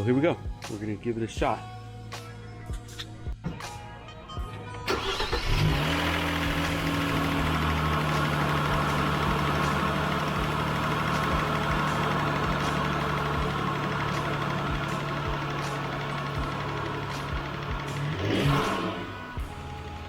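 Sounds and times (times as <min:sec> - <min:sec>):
car engine starting: 0:04.8 - 0:20.0
car engine idling: 0:04.9 - 0:20.0.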